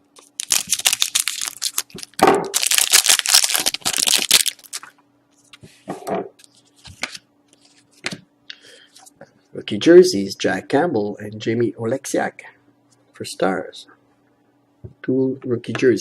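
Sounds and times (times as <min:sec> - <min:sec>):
foil wrapper tearing and crinkling: 0:00.2 - 0:04.9
cards rustling and clicking: 0:06.4 - 0:08.2.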